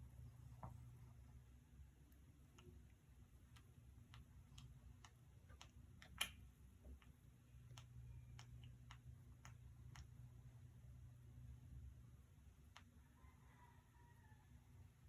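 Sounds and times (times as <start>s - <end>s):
low steady hum: 0.0s - 15.0s
faint regular ticking: 2.0s - 11.1s.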